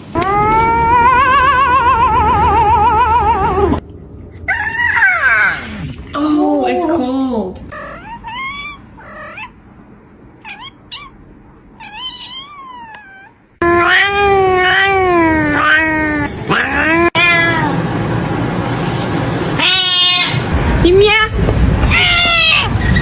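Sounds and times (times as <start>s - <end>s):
cats yowling: 0.2s - 3.8s, 4.5s - 5.8s, 7.7s - 9.6s, 10.4s - 11.2s, 11.8s - 17.8s, 19.6s - 20.5s, 21.9s - 22.9s
cats meowing: 7.7s - 9.6s, 10.4s - 17.8s, 19.6s - 20.5s, 21.9s - 23.0s.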